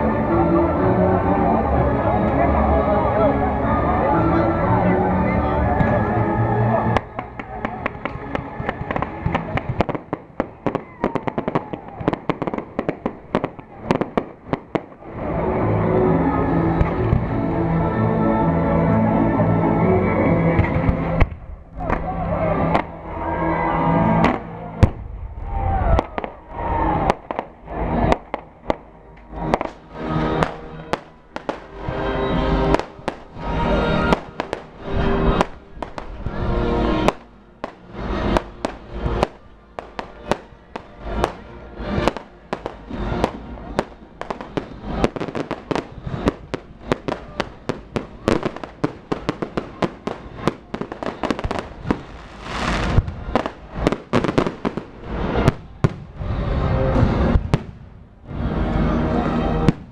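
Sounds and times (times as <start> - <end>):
music playing: 0.0 - 59.9
fireworks banging: 6.8 - 15.2, 27.0 - 58.4, 59.5 - 59.9.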